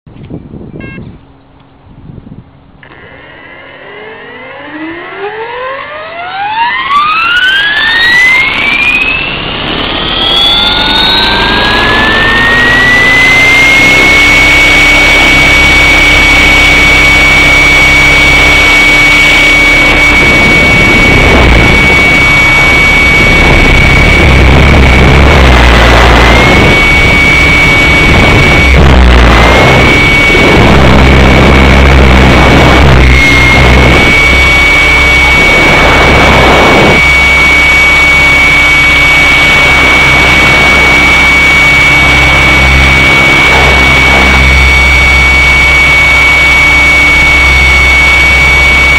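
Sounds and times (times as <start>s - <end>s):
model helicopter whine: 2.6s - 48.9s
rushing noise: 2.8s - 48.9s.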